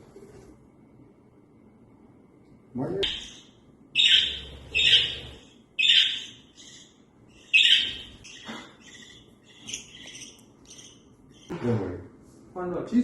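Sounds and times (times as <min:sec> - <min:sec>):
budgerigar chirping: 0:03.0 - 0:11.5.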